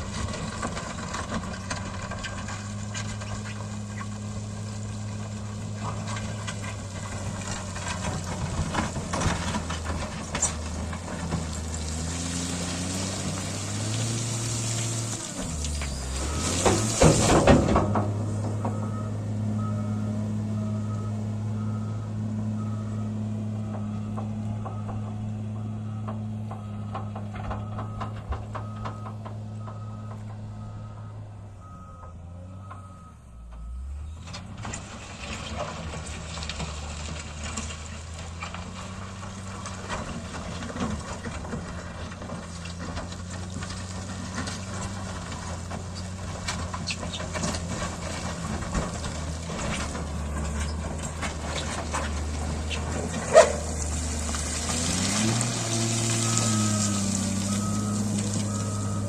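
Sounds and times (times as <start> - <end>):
diesel engine running: 0.0 - 59.0
reversing alarm beeping: 18.6 - 34.2, 56.1 - 59.0.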